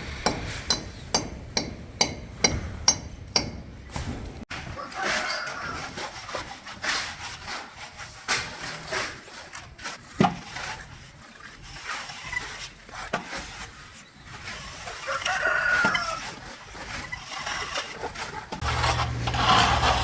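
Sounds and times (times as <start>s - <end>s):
knocks and rubbing: 16.9s - 20.0s.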